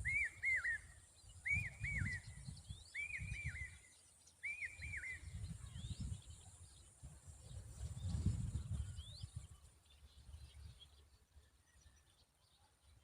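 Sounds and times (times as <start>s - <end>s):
bird whistled calls: 0.0s - 6.0s.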